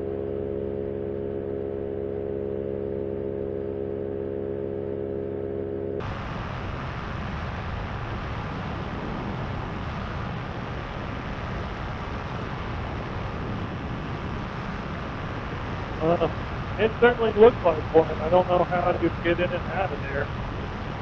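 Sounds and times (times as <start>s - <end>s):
paramotor engine droning: 0.0s - 21.0s
wind rushing: 6.0s - 21.0s.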